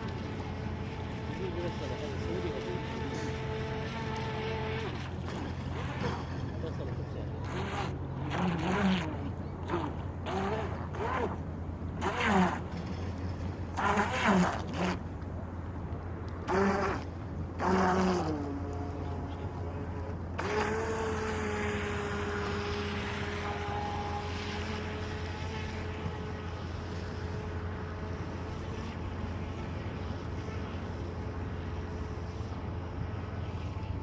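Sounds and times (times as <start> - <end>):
electric motor whining: 0.0 - 6.6, 7.4 - 11.4, 16.4 - 29.5.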